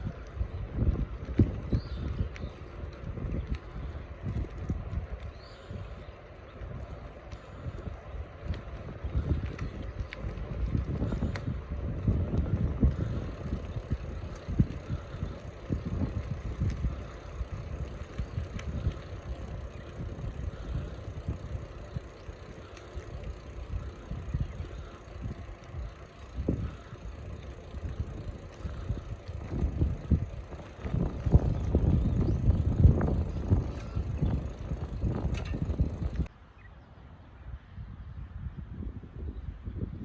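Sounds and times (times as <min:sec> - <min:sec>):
wind buffeting microphone: 0:00.0 - 0:40.0.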